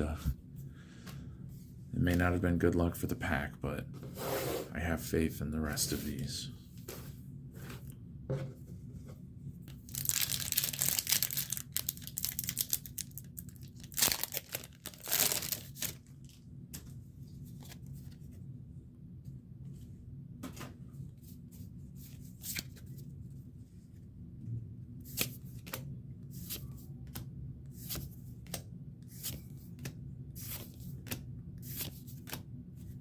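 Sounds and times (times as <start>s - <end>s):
cards rustling and ticking: 9.7s - 17.0s, 25.0s - 33.0s
foil wrapper tearing: 9.8s - 16.1s.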